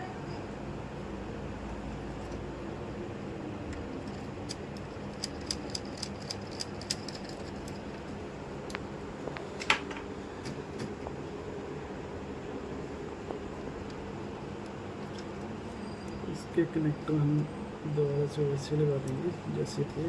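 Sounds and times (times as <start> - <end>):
low room hum: 0.0 - 20.0
laptop parts clicking: 3.8 - 8.0.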